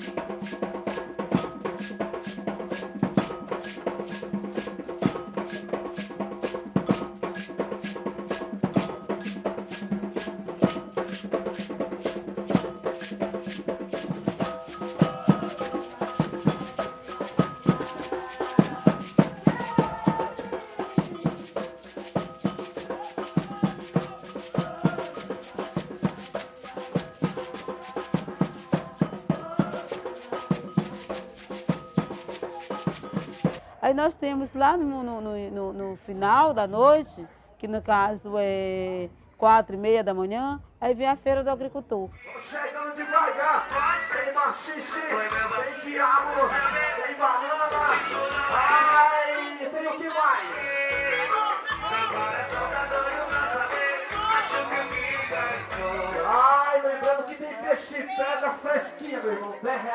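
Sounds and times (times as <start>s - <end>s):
wavering high melody: 50.4s - 56.6s.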